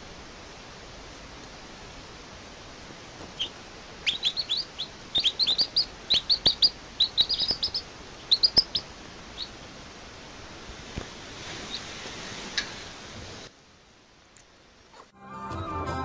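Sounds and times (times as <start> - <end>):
baby birds chirping: 3.2 - 9.7.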